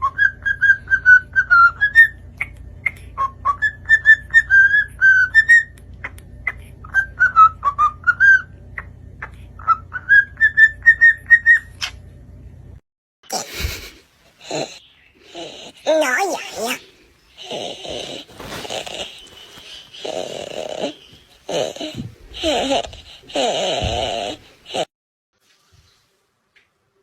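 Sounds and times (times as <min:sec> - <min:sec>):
parrot whistling a tune: 0:00.0 - 0:02.2, 0:03.2 - 0:05.8, 0:06.8 - 0:08.5, 0:09.6 - 0:11.9
parrot squawk: 0:14.4 - 0:16.8.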